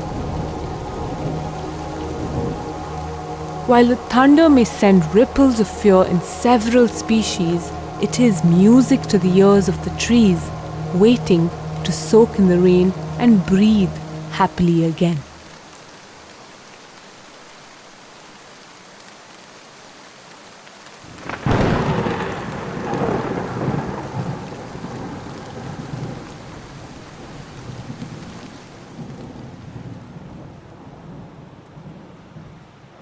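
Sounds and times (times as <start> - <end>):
steady rain: 0.0 - 33.0
thunder crack and rumble: 21.1 - 26.8.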